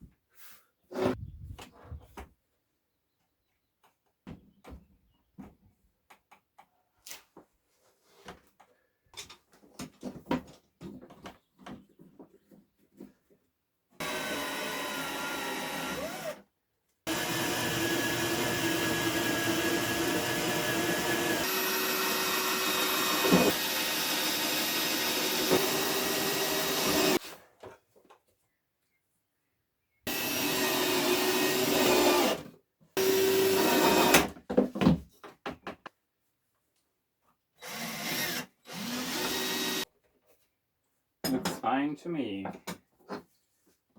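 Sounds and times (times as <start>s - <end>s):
electric drill whining: 14.0s - 16.4s, 17.1s - 27.2s, 30.1s - 32.4s, 33.0s - 34.3s, 37.6s - 39.8s.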